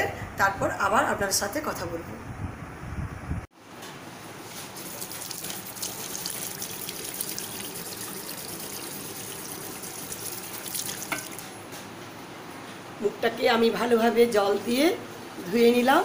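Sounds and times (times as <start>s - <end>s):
tap water running: 4.6s - 11.6s.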